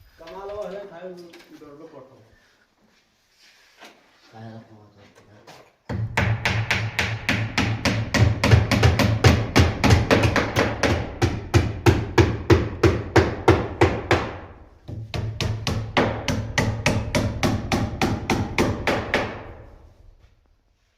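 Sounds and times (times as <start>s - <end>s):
rapid hammer strikes on wood: 5.9s - 19.7s.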